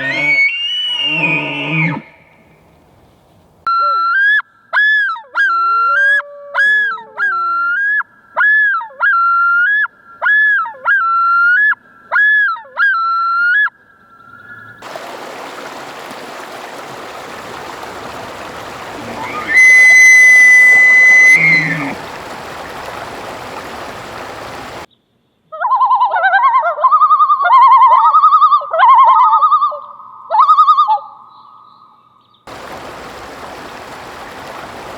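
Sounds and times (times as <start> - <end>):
elk bugling: 14.8 - 24.8
stream water running: 14.8 - 24.9, 32.5 - 34.9
low gliding bird call: 18.0 - 24.8
loon yodel: 18.9 - 22.0.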